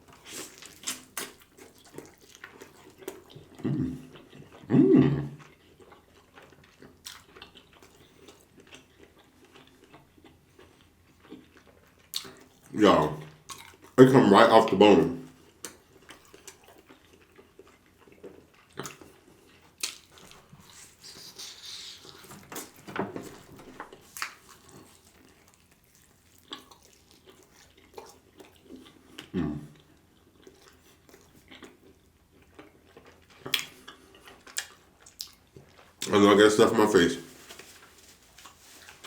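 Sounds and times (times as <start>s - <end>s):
close chewing with mouth smacks: 0.0s - 14.0s, 15.3s - 39.0s.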